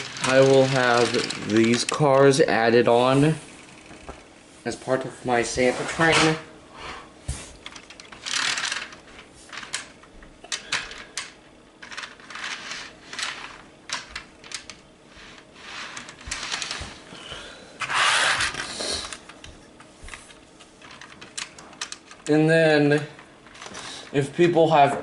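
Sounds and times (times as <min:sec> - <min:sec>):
model train cars clicking: 0:00.0 - 0:02.4.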